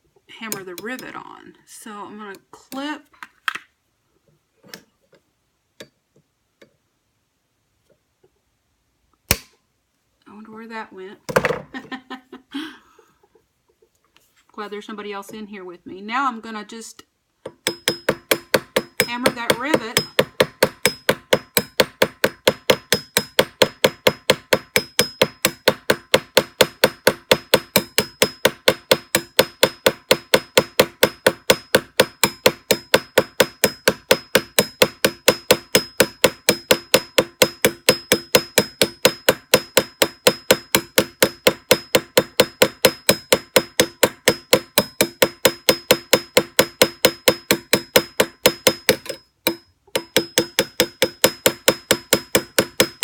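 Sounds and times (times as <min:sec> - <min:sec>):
hammer tapping on metal punch: 0:17.4 - 0:53.0.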